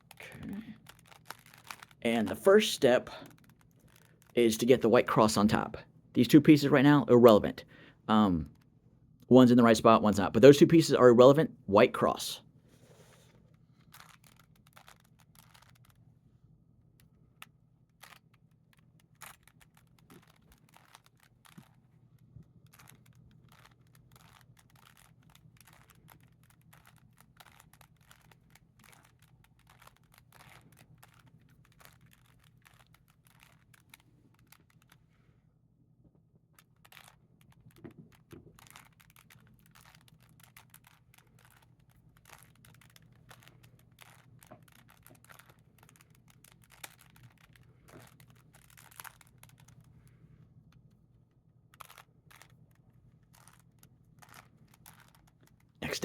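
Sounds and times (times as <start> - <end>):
puzzle cube clicking: 0.0 - 6.6, 13.8 - 16.0, 17.4 - 21.8, 22.7 - 35.0, 36.6 - 49.9, 51.7 - 56.0.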